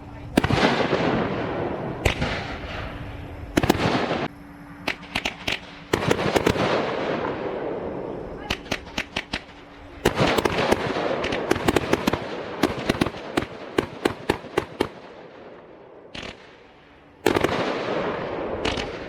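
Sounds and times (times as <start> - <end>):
fireworks bursting and cracking: 0.0 - 19.0.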